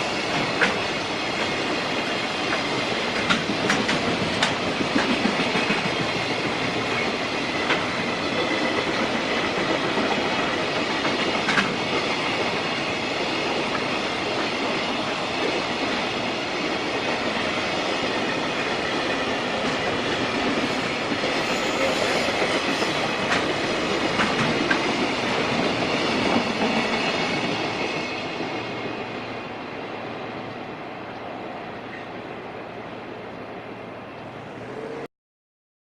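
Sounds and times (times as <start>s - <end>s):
wheels clicking over rail joints: 2.5s - 12.6s, 22.3s - 27.8s.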